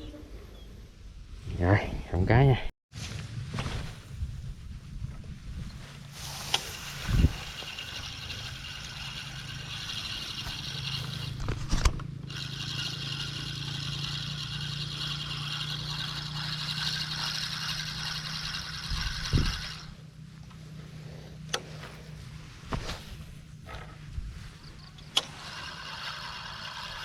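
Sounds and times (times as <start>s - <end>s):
fishing reel whirring: 6.2s - 20.1s, 24.6s - 27.0s
short thumps: 22.6s - 25.3s.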